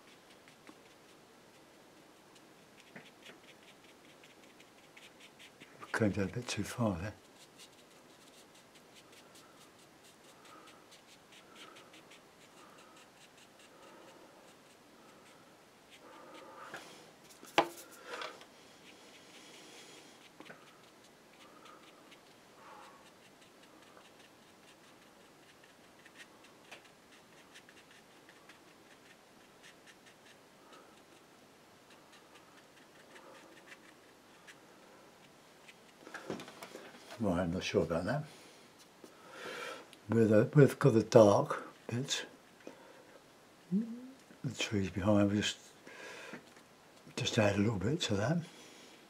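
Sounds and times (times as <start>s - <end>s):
paintbrush dabbing on paper: 0.0s - 18.1s, 18.7s - 36.0s.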